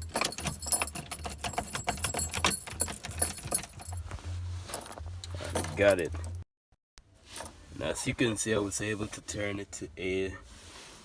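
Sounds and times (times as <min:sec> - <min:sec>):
keys jangling: 0:00.0 - 0:04.0, 0:04.7 - 0:06.4.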